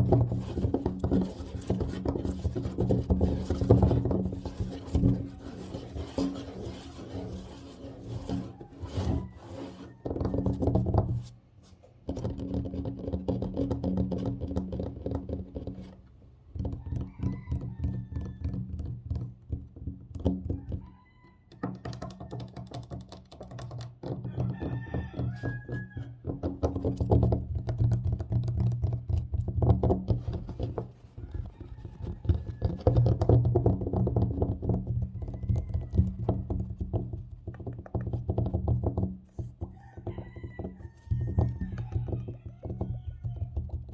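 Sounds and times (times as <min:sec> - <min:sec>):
tapping and scratching on tabletop: 0:00.0 - 0:43.9.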